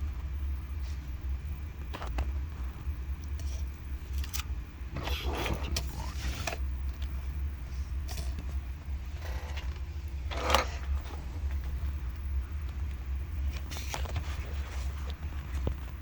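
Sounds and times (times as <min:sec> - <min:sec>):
steady low hum: 0:00.0 - 0:16.0
hands handling a camcorder: 0:04.2 - 0:04.5.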